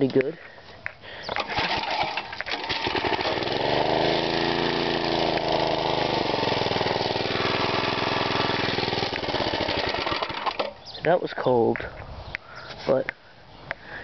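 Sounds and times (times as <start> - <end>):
small gasoline engine running: 1.3 - 10.8.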